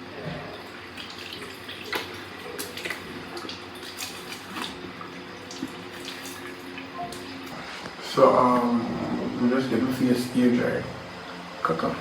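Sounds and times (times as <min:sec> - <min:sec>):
water splashing in a sink: 0:00.5 - 0:07.6.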